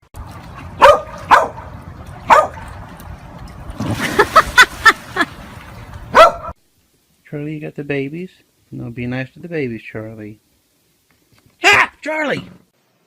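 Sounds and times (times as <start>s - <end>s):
dog barking: 0.8s - 1.7s, 2.3s - 2.6s, 6.1s - 6.6s.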